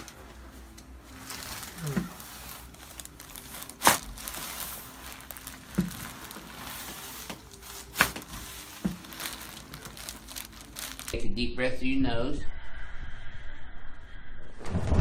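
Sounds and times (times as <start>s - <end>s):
crinkling rustle: 0.0s - 11.2s.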